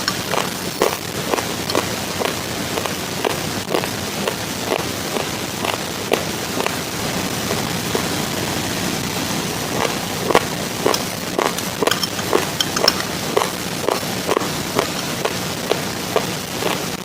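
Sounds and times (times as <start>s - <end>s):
raw rice crunching being chewed: 0.0s - 6.8s, 9.7s - 17.0s
steady hiss: 0.0s - 17.0s.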